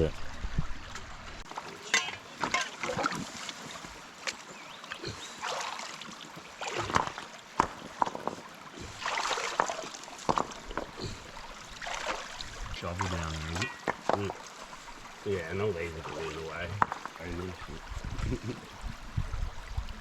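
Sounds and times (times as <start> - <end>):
water splashing and sloshing: 0.0 - 20.0
rocks and gravel knocking: 6.8 - 8.5, 9.5 - 11.1, 13.4 - 14.4, 16.8 - 17.2.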